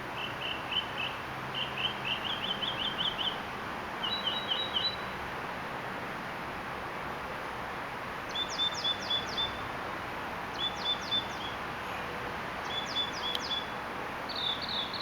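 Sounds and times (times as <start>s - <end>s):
outdoor background hiss: 0.0s - 15.0s
songbird singing: 0.2s - 3.4s, 4.0s - 5.1s, 10.5s - 11.6s, 12.6s - 15.0s.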